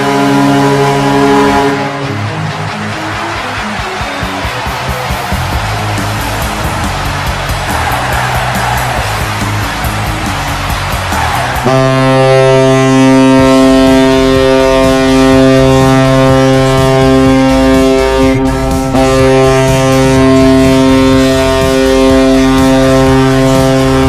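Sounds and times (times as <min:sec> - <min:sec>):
low-pitched air horn blast: 0:00.0 - 0:02.2, 0:11.6 - 0:24.0.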